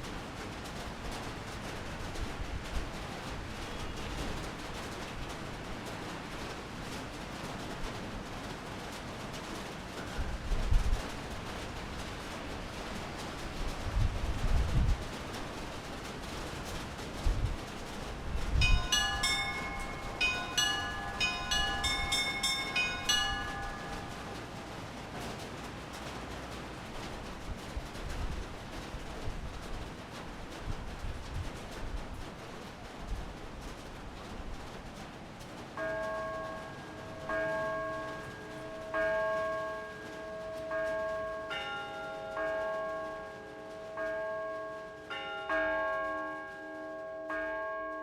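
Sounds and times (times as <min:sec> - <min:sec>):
rain hiss: 0:00.0 - 0:45.2
church bells chiming: 0:18.6 - 0:24.7, 0:35.8 - 0:48.0
higher-pitched bell stroke: 0:18.7 - 0:24.2.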